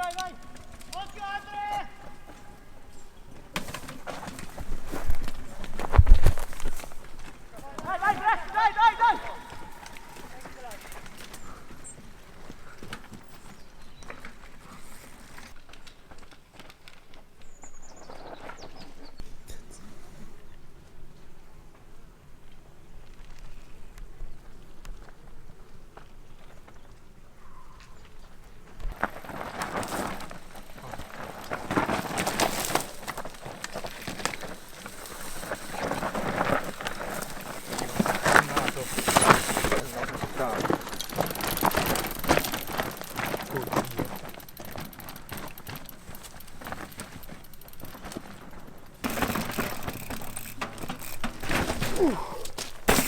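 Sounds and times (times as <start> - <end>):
bike clattering over rocks: 0.0 - 17.6, 28.8 - 53.0.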